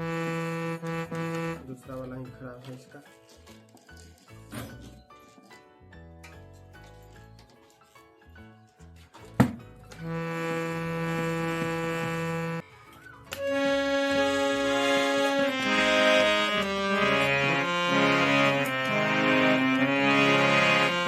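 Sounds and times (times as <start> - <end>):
harmonium notes and chords: 0.0 - 3.4, 9.1 - 21.0.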